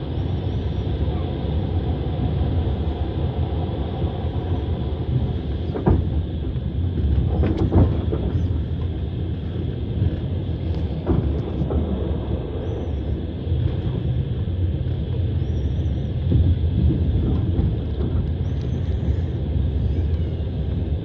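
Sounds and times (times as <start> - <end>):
train wheels rumbling on rails: 0.0 - 21.0
knocks at rail joints: 5.6 - 12.4, 16.2 - 18.6.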